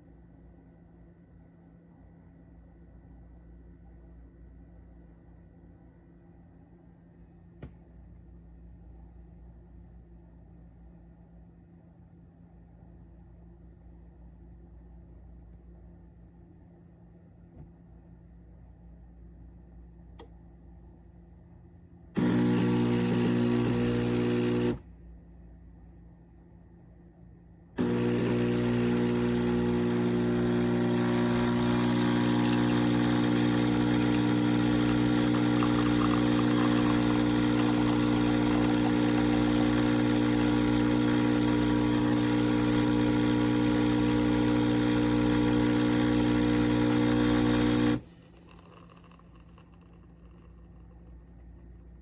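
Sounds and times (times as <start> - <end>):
espresso machine pump buzzing: 22.2 - 24.8, 27.8 - 51.0.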